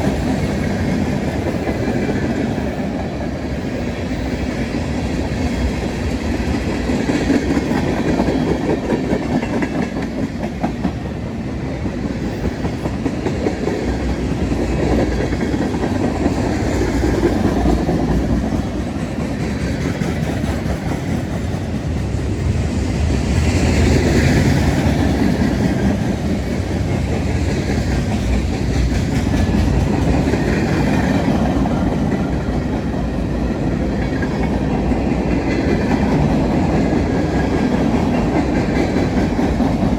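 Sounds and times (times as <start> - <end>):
freight train cars rolling past: 0.0 - 39.9.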